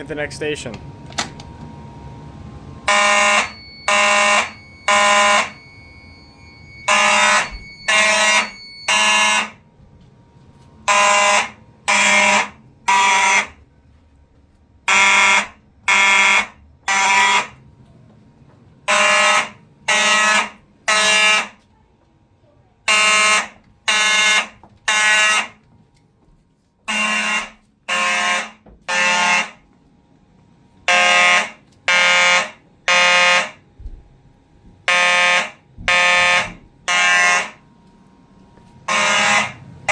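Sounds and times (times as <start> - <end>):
fire alarm horns blaring: 1.6 - 9.8, 10.8 - 13.7, 14.8 - 17.7, 18.8 - 21.7, 22.8 - 25.7, 26.8 - 29.7, 30.8 - 33.7, 34.8 - 39.9.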